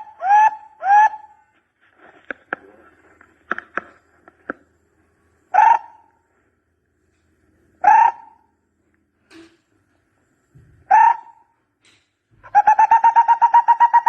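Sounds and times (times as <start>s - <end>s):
bird hollow hoots: 0.0s - 1.5s, 5.5s - 6.2s, 7.8s - 8.5s, 10.8s - 11.5s, 12.4s - 14.0s.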